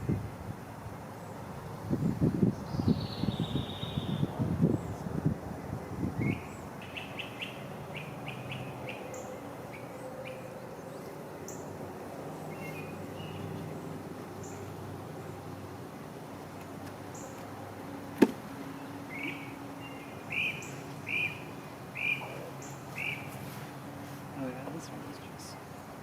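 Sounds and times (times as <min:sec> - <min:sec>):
songbird chirping: 0:02.3 - 0:05.1, 0:06.1 - 0:26.0
honeybees humming: 0:06.6 - 0:26.0
wooden hive frames knocking: 0:18.2 - 0:18.4.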